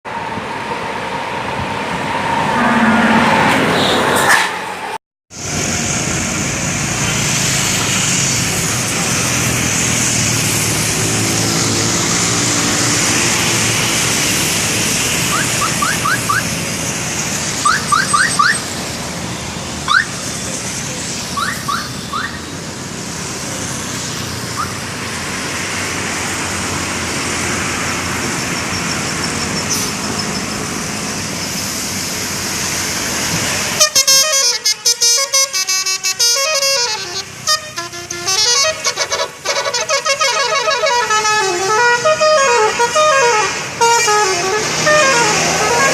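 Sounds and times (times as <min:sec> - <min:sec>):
bus engine: 0:00.0 - 0:45.9
road noise: 0:00.0 - 0:45.9
multi-tone bus horn melody: 0:02.5 - 0:04.2, 0:33.6 - 0:45.9.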